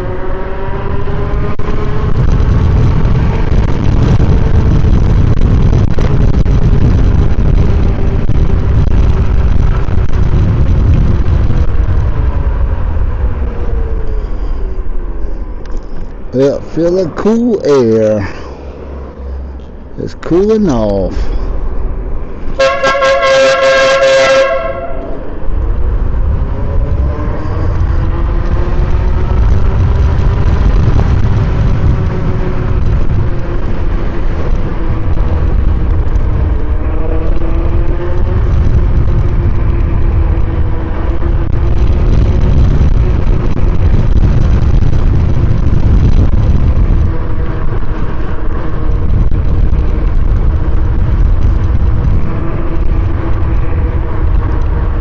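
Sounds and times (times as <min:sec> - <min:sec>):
wind rumble on microphone: 0:00.0 - 0:55.0
electric air horn blast: 0:22.6 - 0:25.2.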